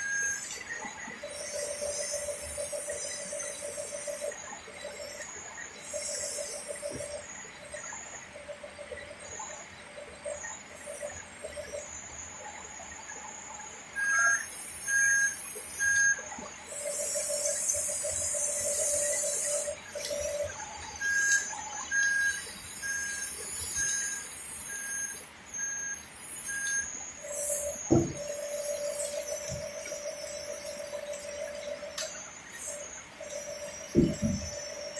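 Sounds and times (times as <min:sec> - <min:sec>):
reversing beeps: 0:00.0 - 0:07.2, 0:14.0 - 0:34.9
pulsing electric buzz: 0:14.0 - 0:34.9.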